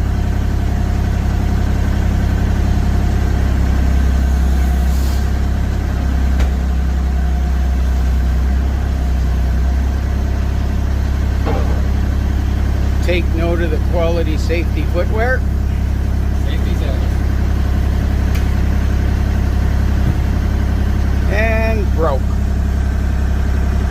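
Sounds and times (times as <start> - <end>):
excavator diesel engine running: 0.0 - 23.9.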